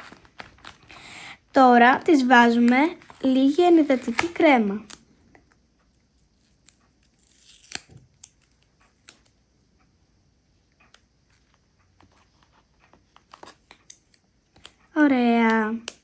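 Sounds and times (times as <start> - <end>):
paper rustling: 0.0 - 1.0, 2.2 - 5.0.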